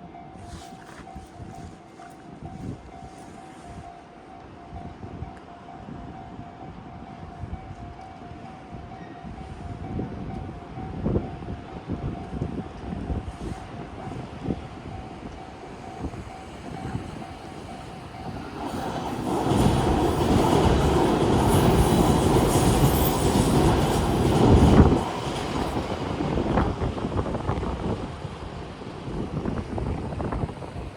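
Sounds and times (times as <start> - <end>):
electric train wheels clattering: 14.8 - 27.7.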